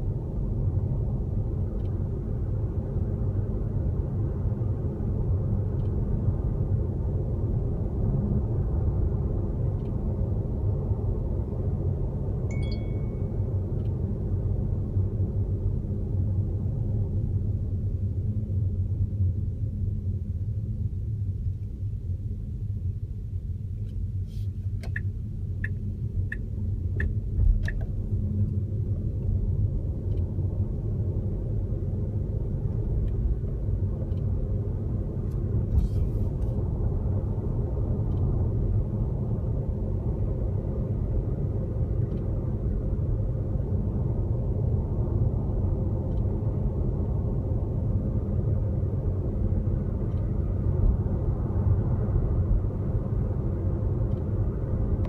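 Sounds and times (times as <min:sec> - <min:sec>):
low road rumble: 0:00.0 - 0:55.0
faint click from car: 0:23.8 - 0:26.4, 0:27.0 - 0:28.0.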